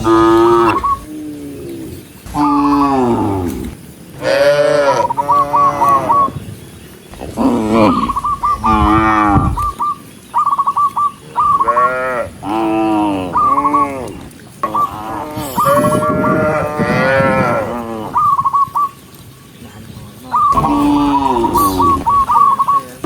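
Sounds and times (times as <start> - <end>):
cattle mooing: 0.0 - 1.1, 2.3 - 6.2, 7.1 - 9.7, 20.5 - 22.3.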